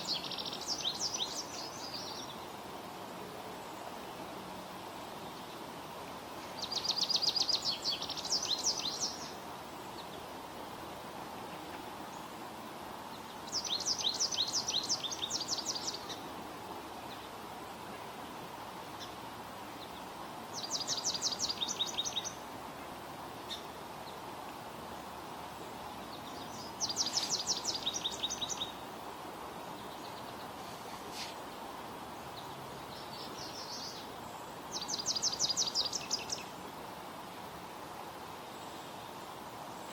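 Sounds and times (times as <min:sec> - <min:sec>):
steady background noise: 0:00.0 - 0:39.9.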